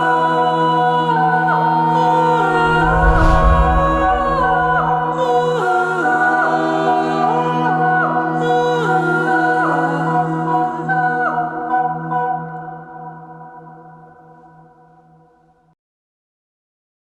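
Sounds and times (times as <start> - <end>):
gliding wordless vocal tones: 2.0 - 6.2
low drone: 2.4 - 5.4
deep boom: 2.5 - 5.2.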